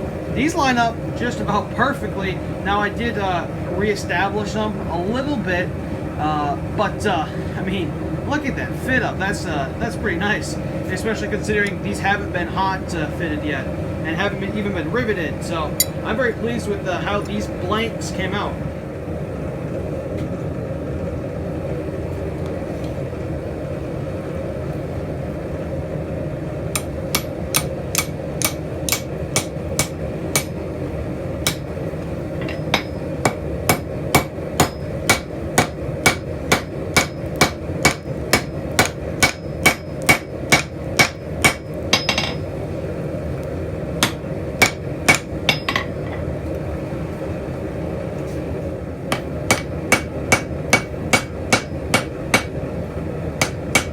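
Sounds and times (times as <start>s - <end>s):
steady low hum: 0.0s - 53.9s
hammer striking steel on anvil: 15.8s - 16.0s, 26.8s - 30.6s, 31.5s - 31.7s, 32.4s - 42.5s, 44.0s - 46.0s, 49.1s - 52.6s, 53.4s - 53.9s.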